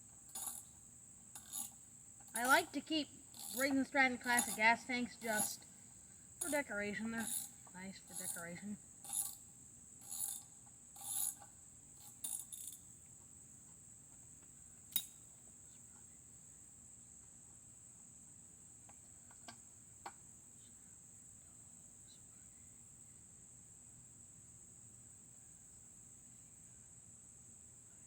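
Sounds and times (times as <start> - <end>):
insects droning: 0.0 - 28.0
socket ratchet clicking: 0.3 - 0.7, 1.4 - 4.7, 5.3 - 5.6, 7.2 - 9.4, 10.0 - 12.8.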